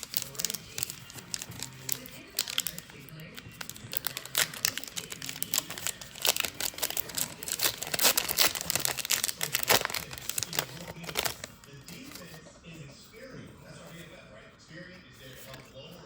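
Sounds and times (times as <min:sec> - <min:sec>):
card pack wrapper crinkling: 0:00.0 - 0:12.4.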